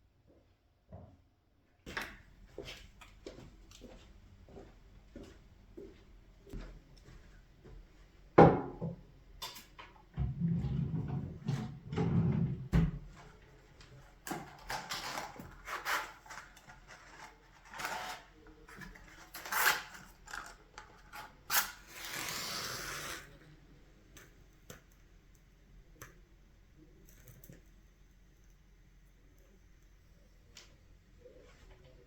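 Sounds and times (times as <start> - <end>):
objects clicking and rustling: 14.2 - 21.8.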